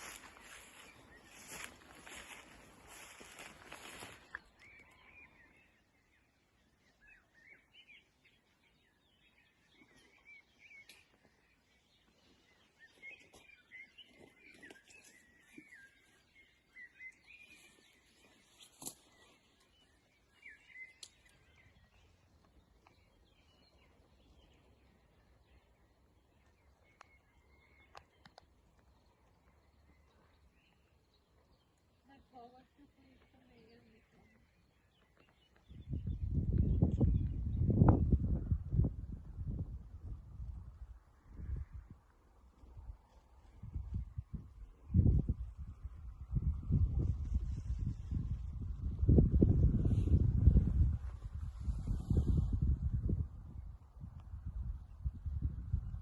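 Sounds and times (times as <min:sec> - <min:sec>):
faint songbird chirping: 0:00.0 - 0:56.0.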